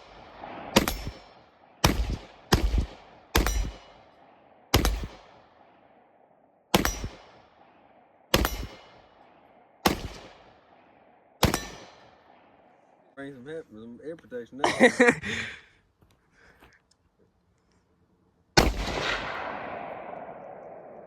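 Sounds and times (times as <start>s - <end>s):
rifle gunshots: 0.0s - 5.9s, 6.7s - 12.7s, 18.6s - 21.0s.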